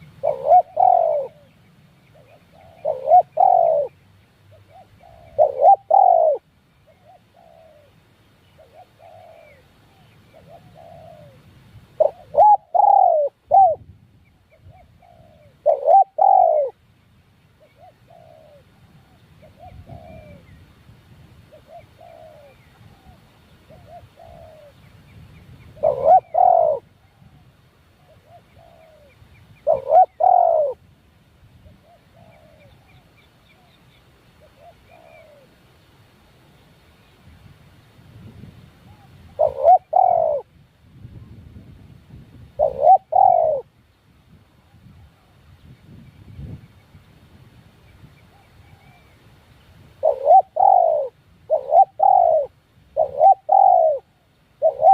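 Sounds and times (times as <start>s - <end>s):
doves cooing: 0.0s - 13.9s, 14.5s - 16.8s, 17.6s - 20.6s, 21.5s - 24.8s, 25.8s - 30.8s, 31.6s - 33.8s, 34.4s - 35.7s, 38.8s - 40.5s, 42.6s - 43.7s, 48.3s - 49.2s, 50.0s - 54.9s.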